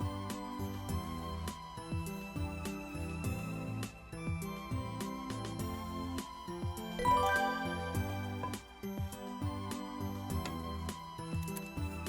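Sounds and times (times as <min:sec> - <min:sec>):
gentle instrumental music: 0:03.4 - 0:12.0.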